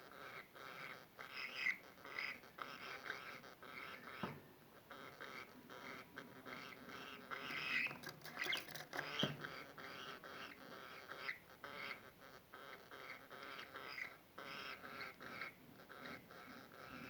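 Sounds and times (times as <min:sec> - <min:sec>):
budgerigar chattering and warbling: 0:00.1 - 0:17.0
sharp bird chirps and clicks: 0:07.3 - 0:09.4.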